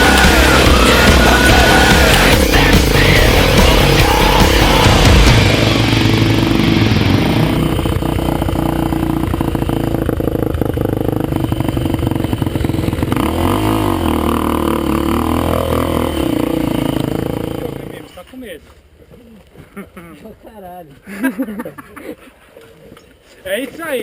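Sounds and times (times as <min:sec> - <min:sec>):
motorcycle engine revving: 0:00.0 - 0:18.2.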